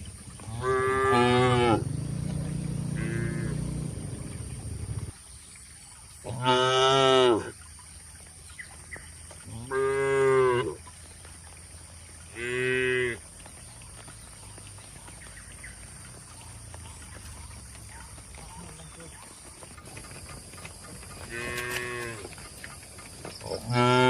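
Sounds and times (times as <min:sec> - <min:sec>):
cow mooing: 0:00.4 - 0:04.2, 0:21.3 - 0:22.3, 0:23.5 - 0:24.0.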